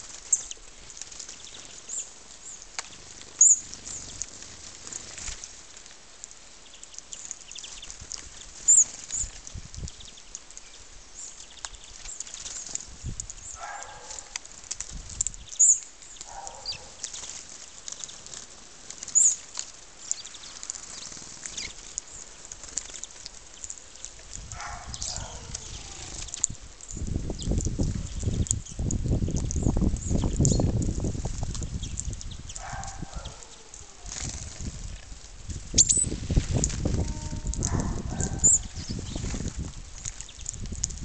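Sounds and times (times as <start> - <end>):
small birds chirping: 0.0 - 41.0
sharp bird calls: 15.4 - 17.4, 24.6 - 28.8, 36.9 - 39.3.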